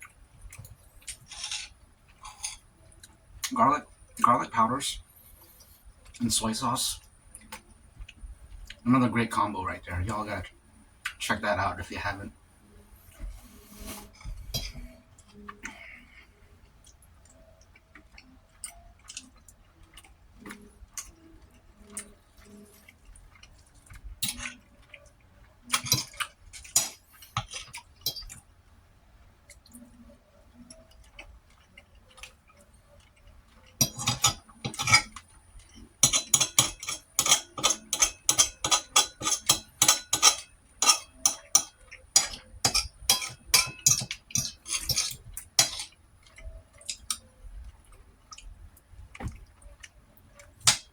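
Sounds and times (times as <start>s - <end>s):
utensils clinking on dishes: 1.1s - 2.6s, 25.7s - 28.4s, 33.8s - 47.2s, 50.5s - 50.9s.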